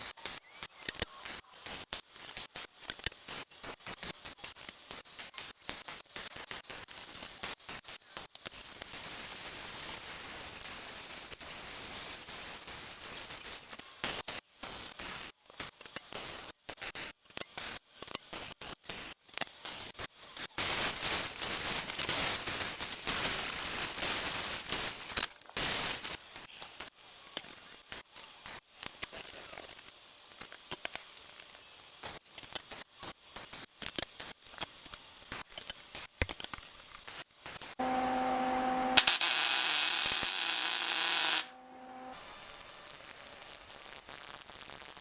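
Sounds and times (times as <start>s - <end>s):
welding arc crackling: 20.6s - 45.0s.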